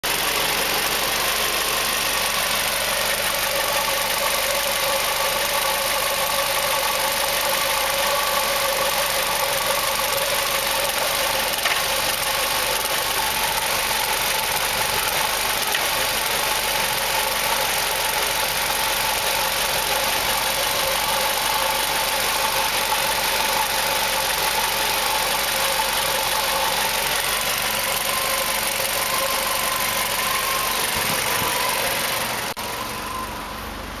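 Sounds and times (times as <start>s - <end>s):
car engine idling rough: 0.0s - 34.0s.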